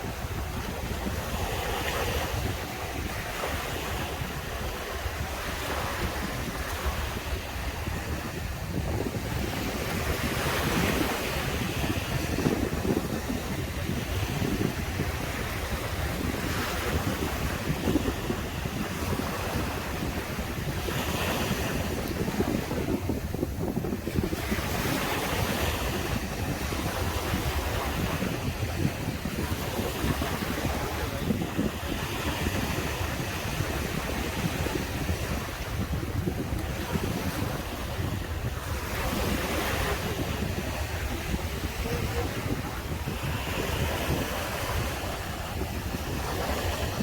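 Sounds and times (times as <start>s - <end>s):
sea waves breaking on beach: 0.0s - 47.0s
wind buffeting microphone: 0.0s - 47.0s.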